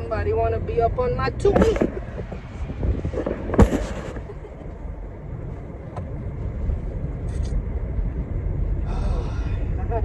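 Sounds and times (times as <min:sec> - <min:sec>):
road and engine rumble: 0:00.0 - 0:10.0
short clatter and knock: 0:03.2 - 0:04.3.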